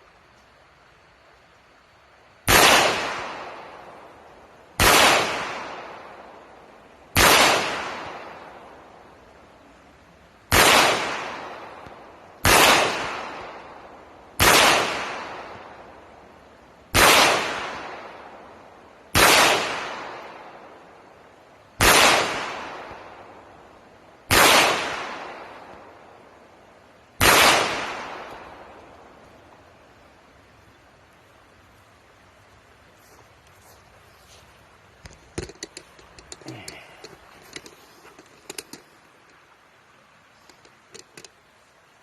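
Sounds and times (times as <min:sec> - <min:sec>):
pistol shots with echo: 0:02.5 - 0:03.6, 0:04.8 - 0:06.0, 0:07.2 - 0:08.4, 0:10.5 - 0:11.8, 0:12.4 - 0:13.6, 0:14.4 - 0:15.6, 0:17.0 - 0:18.1, 0:19.2 - 0:20.4, 0:21.8 - 0:23.1, 0:24.3 - 0:25.7, 0:27.2 - 0:28.7.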